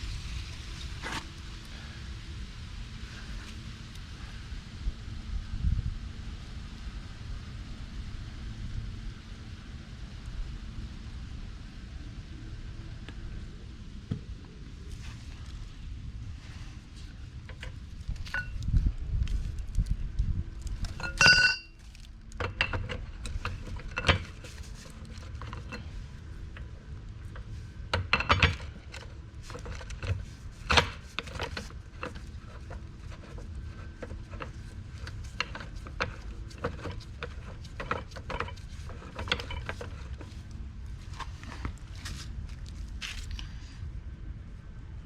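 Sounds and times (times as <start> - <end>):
metal tool clinks and knocks: 21.0 - 21.8.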